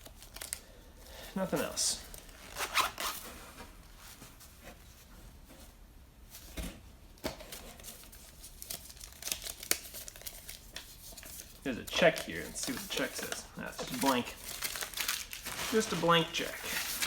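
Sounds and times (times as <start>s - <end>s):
paper rustling: 7.5s - 17.0s.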